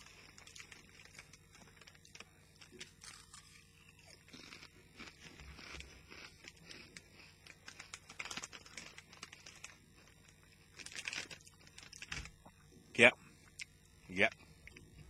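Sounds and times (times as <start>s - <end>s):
crisp packet crinkling: 0.0s - 3.6s, 4.3s - 12.3s
crisps being crunched and chewed: 0.0s - 12.5s.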